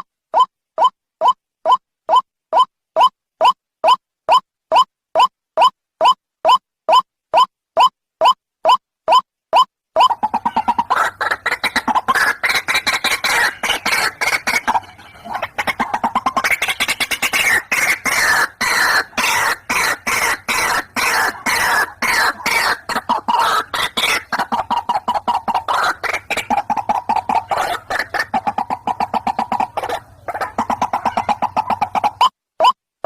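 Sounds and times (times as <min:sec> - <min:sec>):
waterhen harsh chattering calls: 0:10.0 - 0:32.3.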